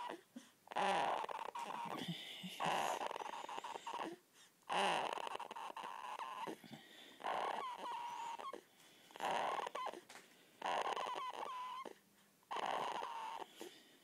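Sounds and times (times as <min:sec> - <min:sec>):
baby snoring with whistling: 0:02.6 - 0:06.6, 0:07.2 - 0:08.6, 0:09.2 - 0:10.0, 0:10.6 - 0:13.7.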